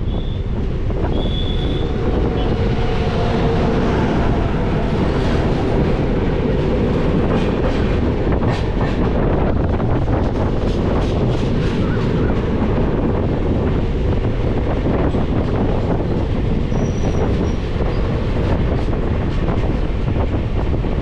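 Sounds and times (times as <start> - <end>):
high wheel squeals: 0.0 - 2.6, 16.7 - 18.1
train wheels rumbling on rails: 0.0 - 21.0.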